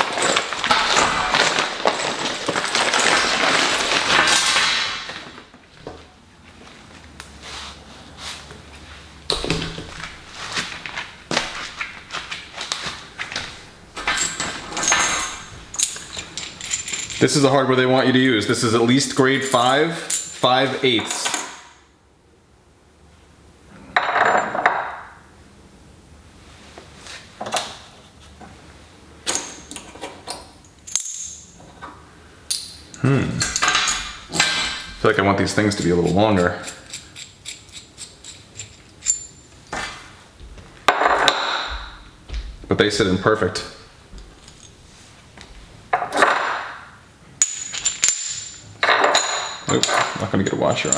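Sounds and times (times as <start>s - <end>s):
bolts and nuts clinking: 0.0s - 5.5s, 9.3s - 21.8s, 24.0s - 25.2s, 29.2s - 50.9s.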